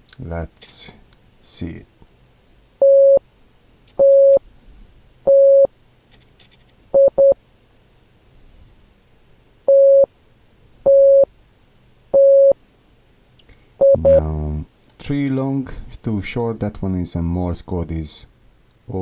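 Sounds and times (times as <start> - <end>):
electronic error beeps: 4.0 - 4.4, 5.3 - 5.7, 13.8 - 14.2.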